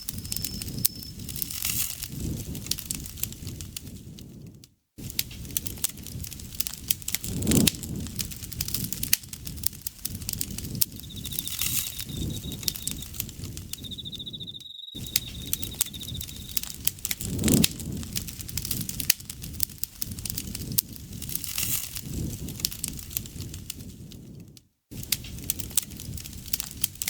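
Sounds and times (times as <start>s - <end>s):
insect chirping trill: 0.0s - 1.6s, 10.4s - 16.8s
bonfire crackling and popping: 0.0s - 27.0s.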